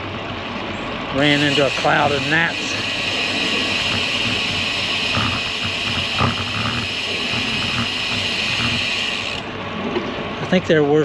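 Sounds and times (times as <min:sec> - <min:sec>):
steady high-pitched buzz: 0:01.1 - 0:09.6
bicycle freehub ticking: 0:01.2 - 0:09.5.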